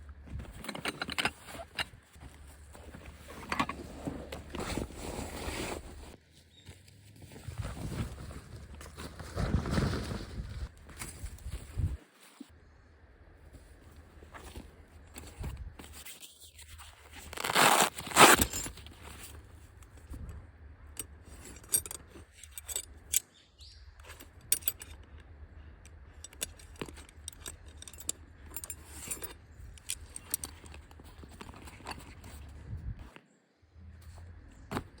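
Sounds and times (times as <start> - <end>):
rustling and scraping: 0.0 - 12.6, 13.5 - 23.2, 24.0 - 33.3, 33.9 - 35.0
metal pieces clinking: 24.1 - 25.1.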